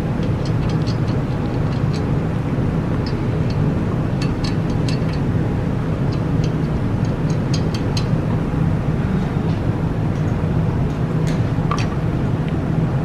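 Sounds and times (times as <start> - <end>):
low rumble with hum: 0.0 - 13.0
hand tools clicking: 4.2 - 5.2.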